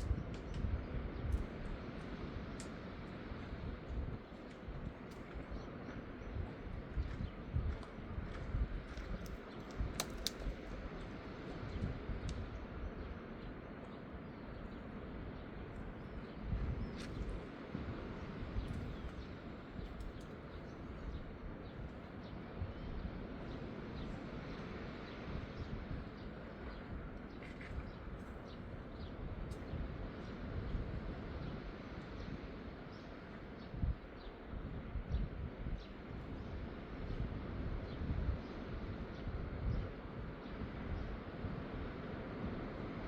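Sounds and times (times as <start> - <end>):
wind gusting on microphone: 0.0 - 14.4, 15.0 - 43.0
small clicks: 9.2 - 10.6.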